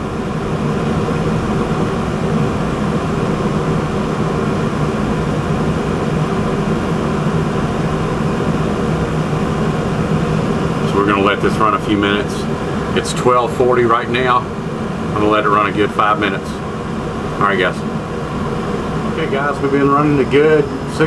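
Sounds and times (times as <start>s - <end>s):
gas furnace humming: 0.0s - 21.0s.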